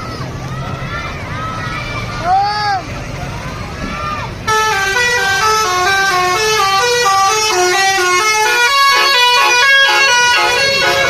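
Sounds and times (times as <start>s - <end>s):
bus horn playing a tune: 4.4s - 11.0s.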